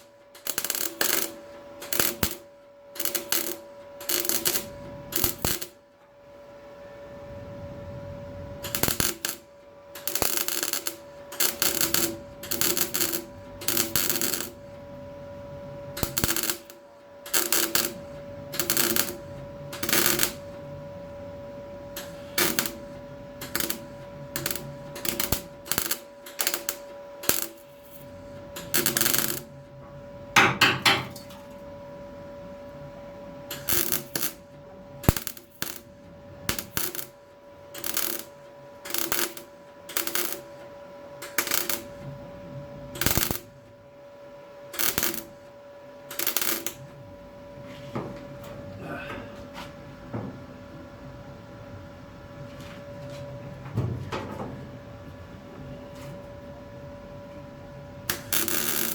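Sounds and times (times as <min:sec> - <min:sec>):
electric welder bursts on sheet steel: 0:00.0 - 0:05.8, 0:08.6 - 0:14.8, 0:16.0 - 0:20.5, 0:22.0 - 0:29.6, 0:33.5 - 0:42.0, 0:42.9 - 0:43.6, 0:44.7 - 0:45.5, 0:46.1 - 0:46.8, 0:58.1 - 0:58.9
faint steady hum: 0:00.0 - 0:58.9.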